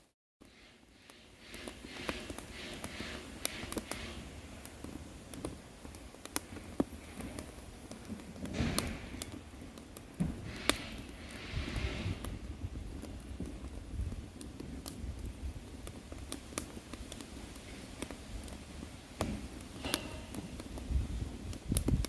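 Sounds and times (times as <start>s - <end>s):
firewood crackling and popping: 0.4s - 22.0s
low rushing of flame: 0.4s - 22.0s.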